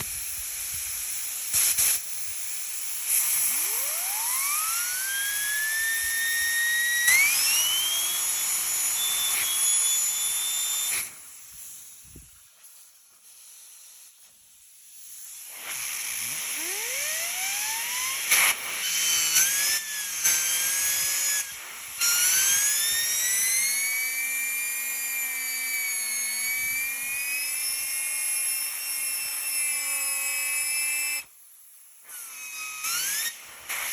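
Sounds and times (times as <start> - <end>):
vacuum cleaner motor whining: 3.1 - 11.7, 15.4 - 31.3, 32.1 - 33.9.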